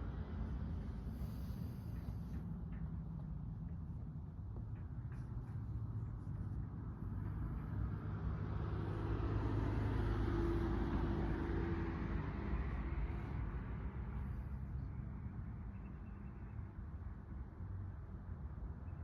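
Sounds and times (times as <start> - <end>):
vehicle passing by: 5.1 - 15.4.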